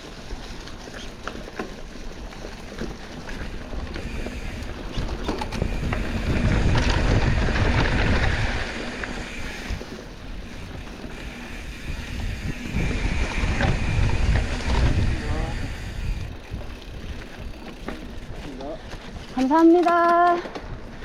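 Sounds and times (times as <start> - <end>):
bike tyres on dirt trail: 0.0 - 21.0
wind rumble on microphone: 3.3 - 21.0
sharp clicks and rattles: 3.7 - 9.8, 10.9 - 20.8.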